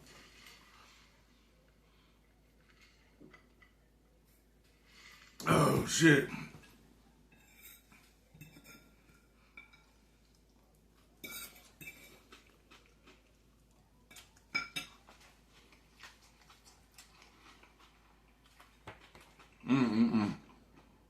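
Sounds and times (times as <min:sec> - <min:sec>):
cutlery clinking on a dish: 0:07.3 - 0:10.0, 0:11.2 - 0:12.3, 0:14.1 - 0:15.3.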